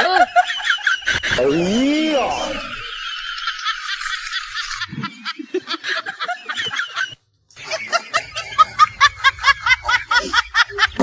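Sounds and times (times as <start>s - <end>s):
snickering laughter: 2.5s - 11.0s.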